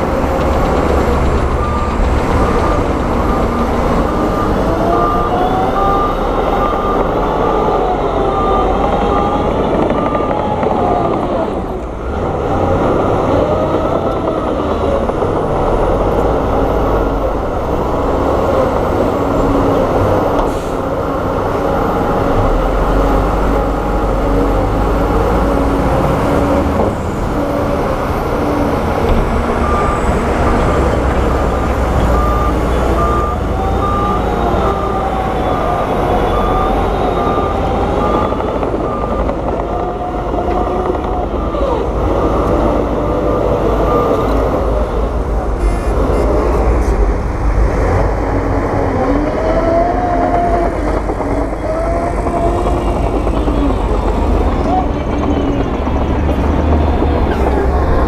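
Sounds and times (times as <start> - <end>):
reversing alarm beeping: 0.0 - 20.9, 28.6 - 47.0
heavy diesel machinery running: 0.0 - 58.0.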